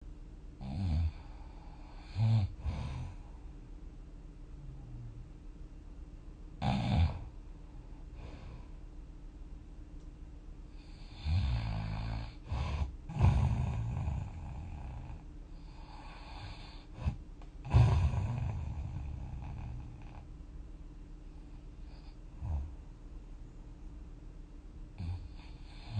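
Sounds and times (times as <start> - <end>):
person snoring: 0.6 - 3.4, 6.6 - 7.3, 10.8 - 20.3, 21.8 - 22.8, 25.0 - 25.9
quiet breathing: 0.6 - 5.5, 6.6 - 9.3, 10.5 - 24.2, 24.9 - 25.9.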